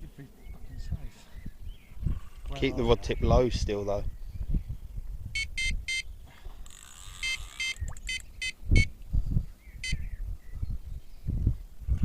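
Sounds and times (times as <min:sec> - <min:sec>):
bite alarm beeping: 0:05.4 - 0:06.1, 0:07.1 - 0:08.9, 0:09.8 - 0:10.0.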